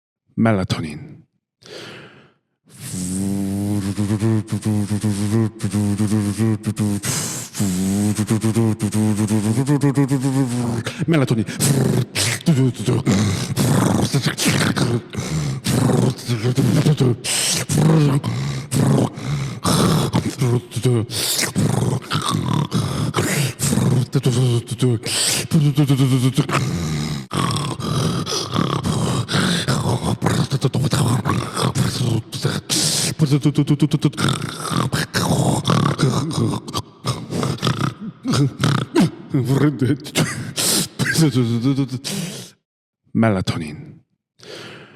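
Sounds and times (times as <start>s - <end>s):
hissing breath: 1.6s - 3.9s, 17.2s - 20.2s, 40.4s - 41.0s, 42.0s - 42.6s, 44.4s - 44.9s
beatboxing snores and hisses: 2.7s - 39.3s, 40.0s - 42.6s.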